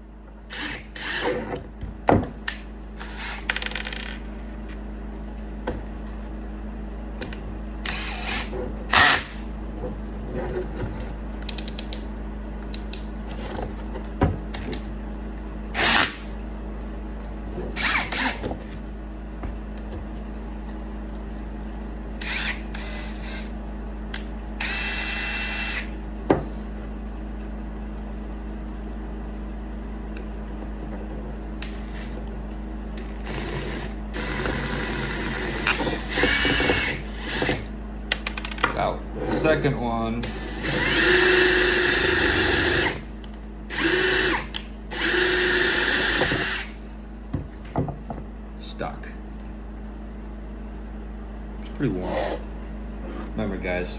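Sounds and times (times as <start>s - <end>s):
electric drill running: 0.5s - 1.5s, 3.0s - 4.1s, 7.8s - 9.4s, 15.7s - 16.3s, 17.8s - 18.7s, 22.2s - 23.6s, 24.6s - 26.0s, 33.0s - 37.7s, 40.2s - 46.9s.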